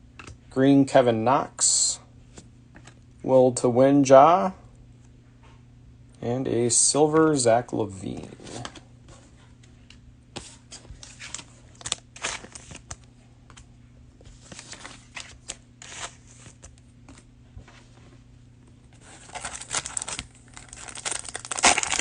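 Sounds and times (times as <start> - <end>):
trading cards rustling: 10.4 - 13.7, 14.3 - 17.3, 19.0 - 22.0
cellophane wrapper crinkling: 11.0 - 13.1, 19.0 - 22.0.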